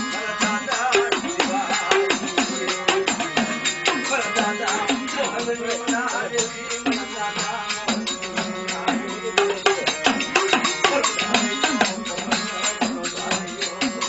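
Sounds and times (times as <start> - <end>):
fast drum strokes: 0.0 - 14.0.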